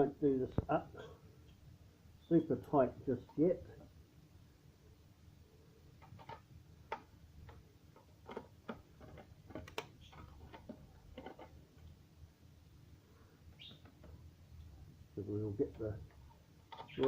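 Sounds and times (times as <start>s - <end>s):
hand tools clicking and tapping: 6.0s - 11.6s.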